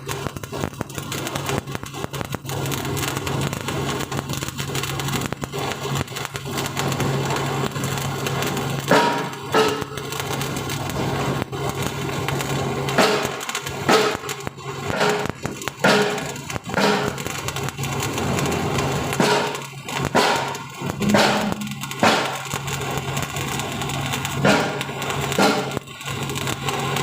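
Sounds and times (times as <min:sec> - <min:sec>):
welding arc crackling: 0:00.0 - 0:27.0
low hum: 0:20.4 - 0:22.9.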